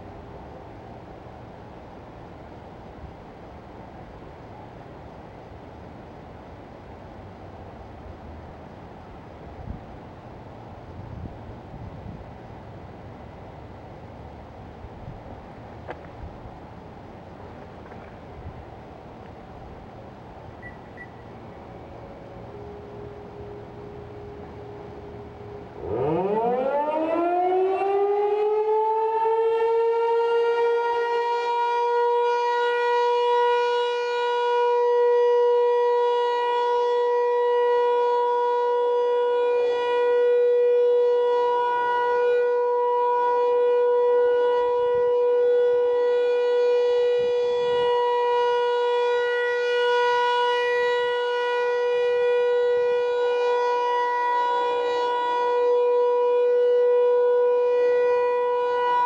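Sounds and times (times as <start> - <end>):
warning siren winding up: 25.8 - 31.0.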